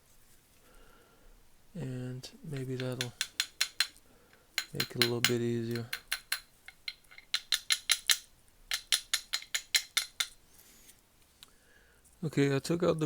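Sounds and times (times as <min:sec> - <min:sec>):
metal-on-metal taps: 0:02.5 - 0:04.0, 0:04.6 - 0:10.4.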